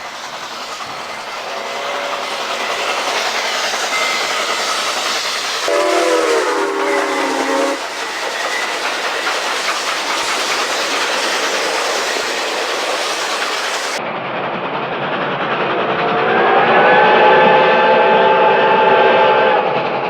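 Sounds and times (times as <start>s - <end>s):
train wheels on track: 0.0s - 20.0s
train horn chord: 5.7s - 7.9s.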